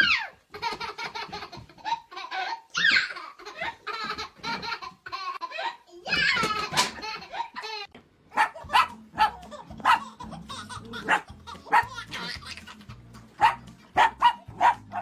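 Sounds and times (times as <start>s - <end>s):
dog barking: 8.3s - 10.1s, 11.0s - 12.0s, 13.4s - 15.0s.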